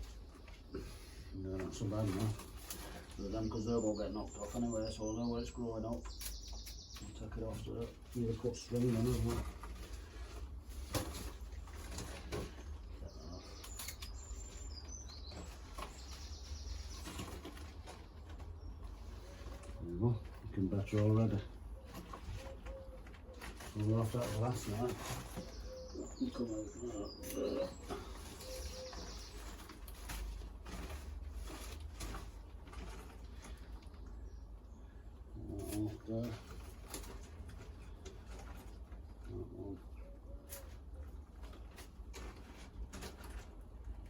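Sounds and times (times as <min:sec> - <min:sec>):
pruning clicks and rustling: 0:00.0 - 0:34.2, 0:35.4 - 0:44.0
faint bird chirps: 0:00.3 - 0:09.3, 0:21.2 - 0:30.4
bird cooing: 0:21.7 - 0:23.9, 0:24.5 - 0:29.6, 0:39.3 - 0:41.2.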